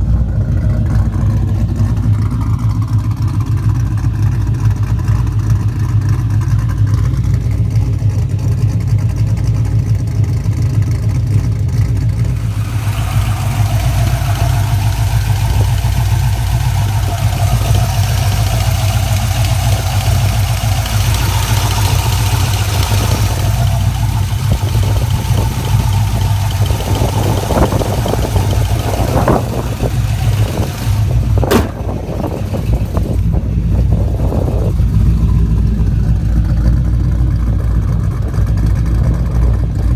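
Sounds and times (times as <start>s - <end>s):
car engine idling: 0.0s - 39.9s
sharp click: 31.5s - 32.1s
knocks: 31.5s - 32.4s.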